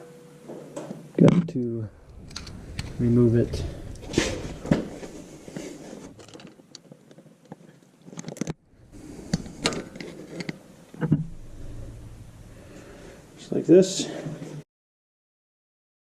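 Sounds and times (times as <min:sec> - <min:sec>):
small metal clicks and scrapes: 0:09.3 - 0:11.0.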